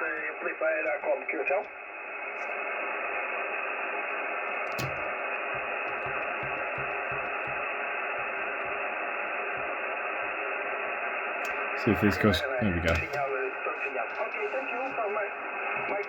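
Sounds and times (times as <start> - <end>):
radio static hiss: 0.0 - 16.0.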